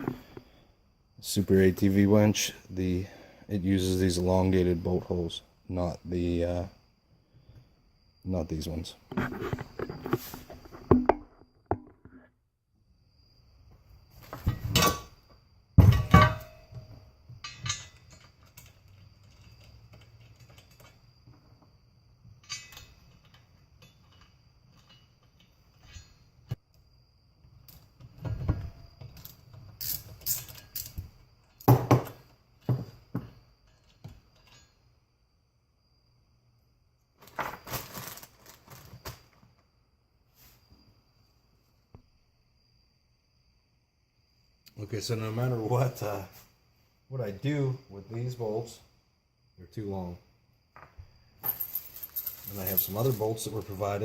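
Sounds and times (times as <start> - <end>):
metal bolts clinking: 15.8 - 21.0, 22.4 - 26.4, 33.6 - 34.9, 51.4 - 54.0.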